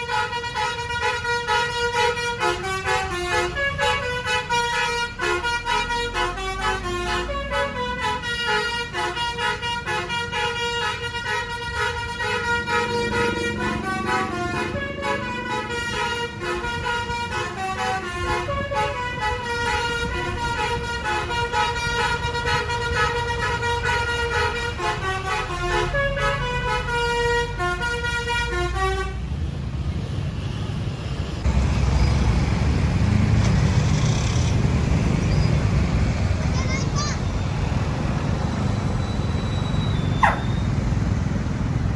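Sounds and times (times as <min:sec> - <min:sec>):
musical bus horn tune: 0:00.0 - 0:29.4
vehicle engine and road noise: 0:00.0 - 0:41.9.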